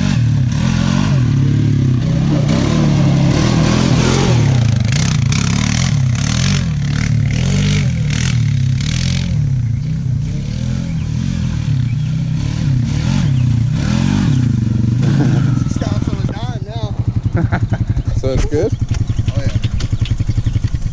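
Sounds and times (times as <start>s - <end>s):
atv engine revving: 0.0s - 20.9s
engine clattering: 14.3s - 20.9s.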